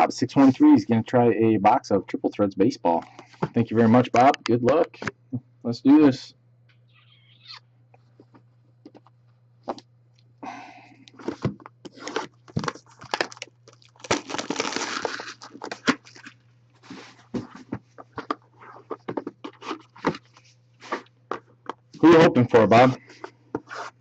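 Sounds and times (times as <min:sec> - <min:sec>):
low electrical hum: 0:00.0 - 0:24.0
packaging rustling and tearing: 0:11.2 - 0:21.1.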